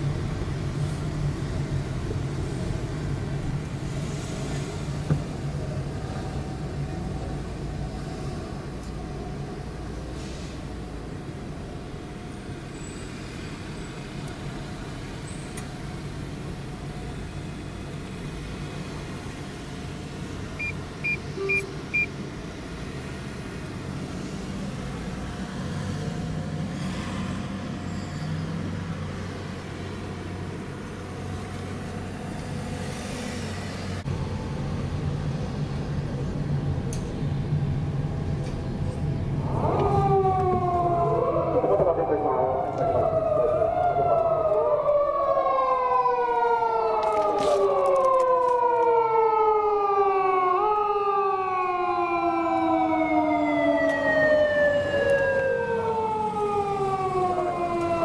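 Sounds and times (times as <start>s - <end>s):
vehicle road rumble: 0.0s - 58.0s
short high beeps: 20.6s - 22.1s.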